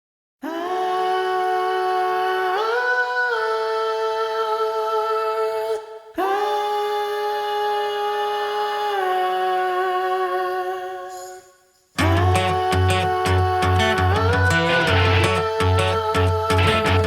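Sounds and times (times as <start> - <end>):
long held music chords: 12.0 - 17.0.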